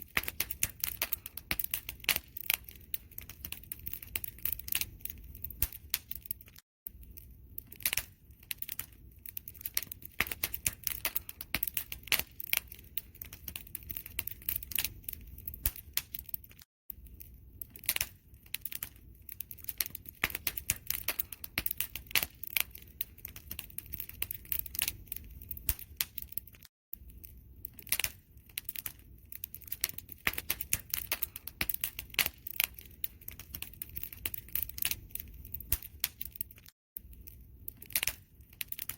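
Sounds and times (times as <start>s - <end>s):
wood fire crackling: 0.0s - 38.9s.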